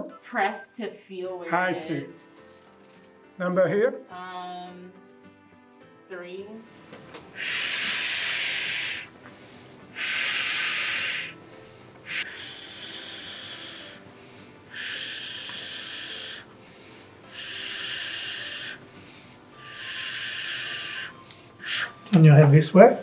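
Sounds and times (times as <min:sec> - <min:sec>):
forceful hissing breaths: 0:06.8 - 0:22.1.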